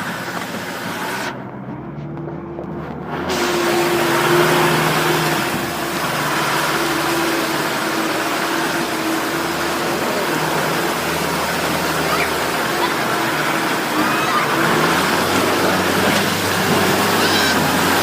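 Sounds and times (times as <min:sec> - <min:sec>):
loud rushing drive noise: 0:00.0 - 0:18.0
truck engine running: 0:00.0 - 0:18.0.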